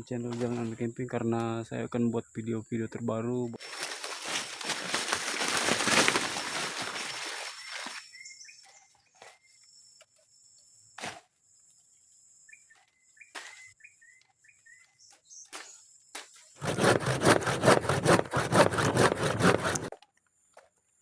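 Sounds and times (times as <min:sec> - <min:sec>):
rustling: 0:03.6 - 0:08.0
bird chirping: 0:07.5 - 0:16.6.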